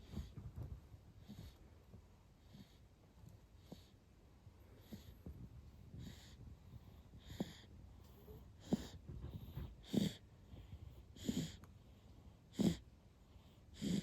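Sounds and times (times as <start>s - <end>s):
light quick snoring: 11.2s - 11.6s, 12.5s - 12.8s, 13.7s - 14.0s.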